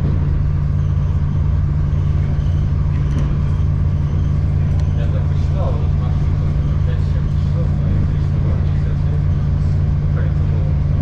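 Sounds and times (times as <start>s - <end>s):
train hum and rumble: 0.0s - 11.0s.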